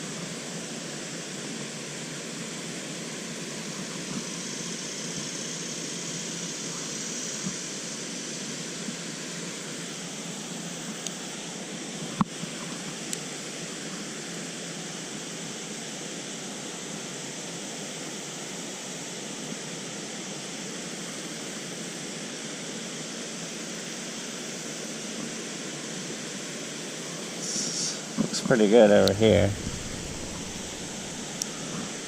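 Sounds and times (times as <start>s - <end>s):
flowing stream rushing: 29.1s - 32.0s.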